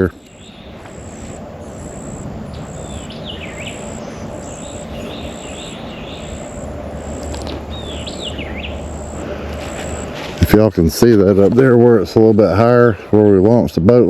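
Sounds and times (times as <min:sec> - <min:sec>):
insect buzzing: 0:00.0 - 0:10.5
soft bird chatter: 0:00.0 - 0:13.8
outdoor background noise: 0:00.0 - 0:14.0
songbird whistling: 0:00.1 - 0:10.2.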